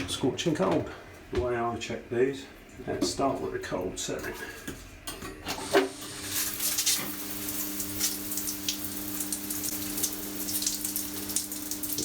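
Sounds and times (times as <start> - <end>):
shower water spraying: 5.6 - 12.0.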